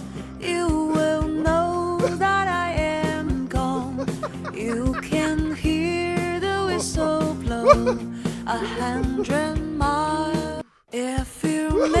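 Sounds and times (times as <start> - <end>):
guitar accompaniment: 0.0 - 10.6
person singing: 0.4 - 12.0.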